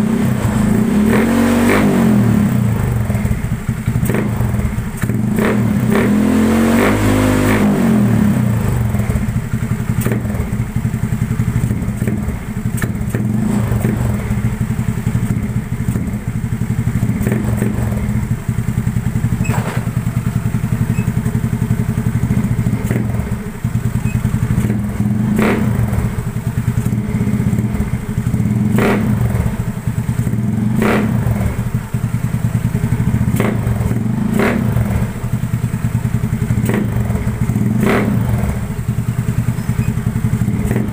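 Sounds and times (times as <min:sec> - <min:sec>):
scooter engine running: 0:00.0 - 0:40.9
brief thumps: 0:19.4 - 0:20.0.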